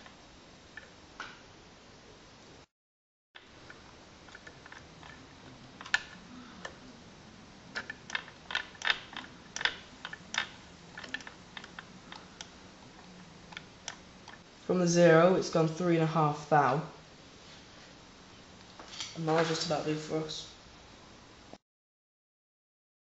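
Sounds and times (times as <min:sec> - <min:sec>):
metal parts clicking and tapping: 0:03.4 - 0:06.8, 0:07.8 - 0:14.4.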